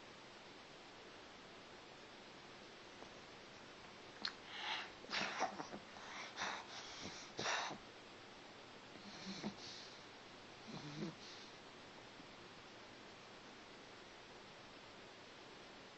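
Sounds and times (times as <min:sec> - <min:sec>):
breathy snoring: 0:09.0 - 0:09.9, 0:10.6 - 0:11.5.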